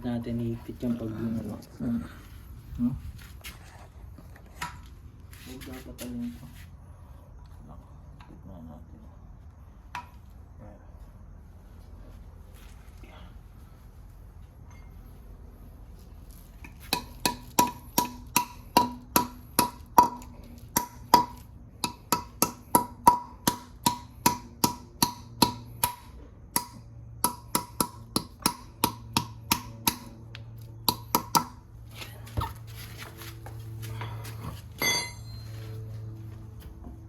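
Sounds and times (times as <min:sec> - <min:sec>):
hammer striking metal: 0:16.9 - 0:30.2, 0:30.8 - 0:31.6, 0:34.8 - 0:35.5.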